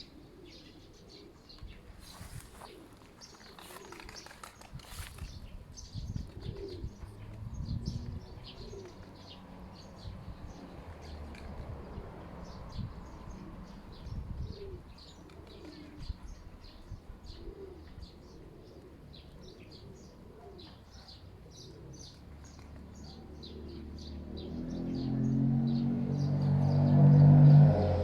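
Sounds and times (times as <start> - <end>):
dove cooing: 0.0 - 5.2, 6.1 - 9.3, 13.2 - 25.0
small birds chirping: 0.0 - 27.2.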